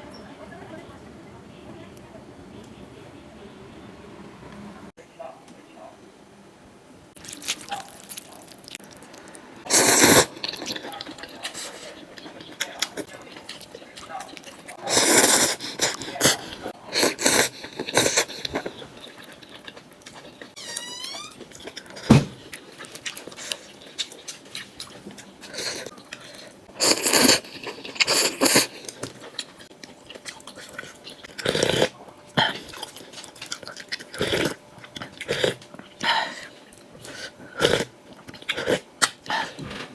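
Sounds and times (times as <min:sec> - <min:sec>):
chewing and crunching: 0:07.2 - 0:20.6, 0:21.4 - 0:39.7.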